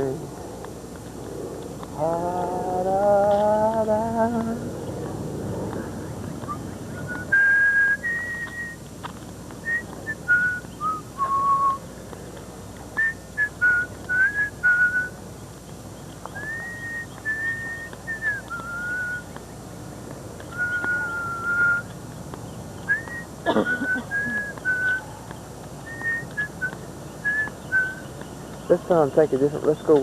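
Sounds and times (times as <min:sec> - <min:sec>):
person whistling a slow tune: 0:06.5 - 0:08.8, 0:09.6 - 0:11.8, 0:13.0 - 0:15.2, 0:16.4 - 0:19.3, 0:20.5 - 0:21.9, 0:22.9 - 0:25.0, 0:25.8 - 0:28.1.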